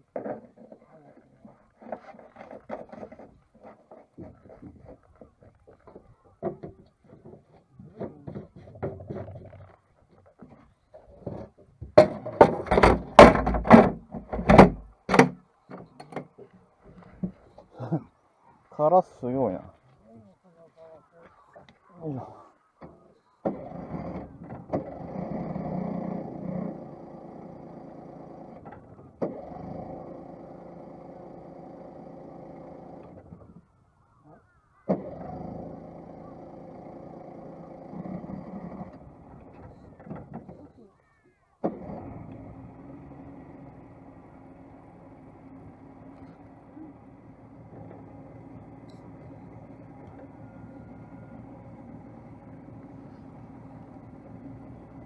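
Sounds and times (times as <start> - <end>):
loud knocks and thuds: 11.8 - 15.4
engine running: 23.4 - 33.6, 34.9 - 40.8, 41.6 - 55.0.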